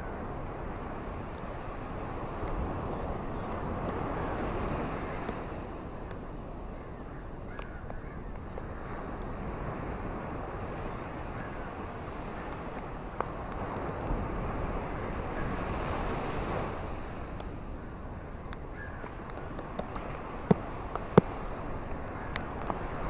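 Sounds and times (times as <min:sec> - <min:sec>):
taps of raindrops: 0:07.5 - 0:08.7, 0:18.5 - 0:21.4.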